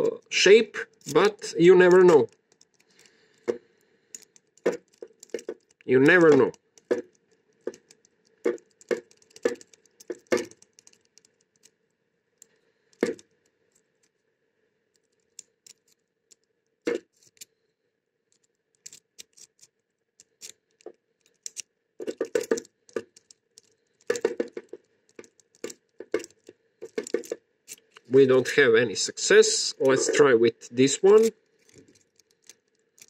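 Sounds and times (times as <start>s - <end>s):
key rattling inside lock: 0.8s - 3.5s, 4.1s - 11.8s, 15.0s - 17.5s, 18.3s - 28.1s, 29.8s - 33.0s.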